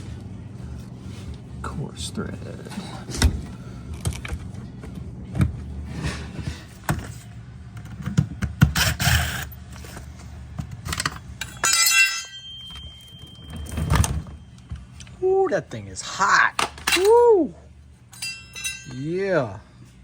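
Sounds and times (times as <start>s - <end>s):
tools clicking and knocking: 10.6s - 14.2s.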